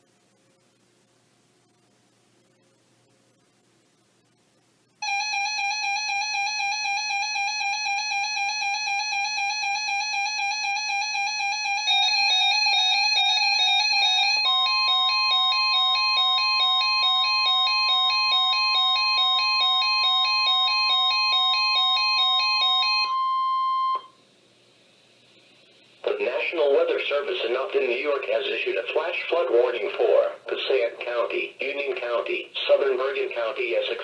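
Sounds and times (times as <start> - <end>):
high alarm tone: 5.0 - 24.2
two-tone electronic beeping: 8.0 - 24.2.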